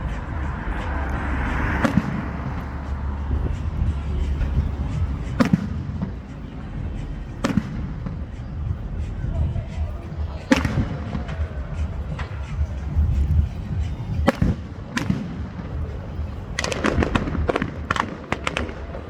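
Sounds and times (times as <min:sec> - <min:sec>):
low rumble: 0:00.0 - 0:18.6
fireworks bangs: 0:14.2 - 0:19.0.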